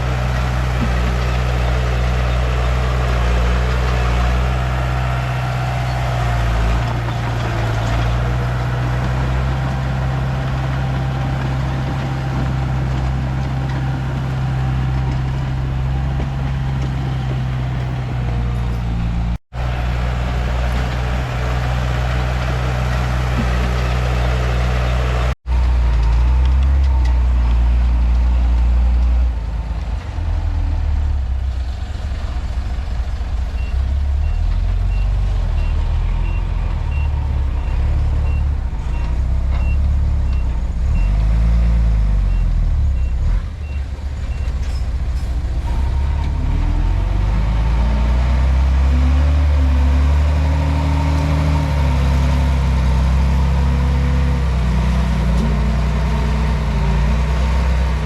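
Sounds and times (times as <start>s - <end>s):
bulldozer diesel engine running: 0.0s - 58.0s
reversing alarm beeping: 33.6s - 41.2s.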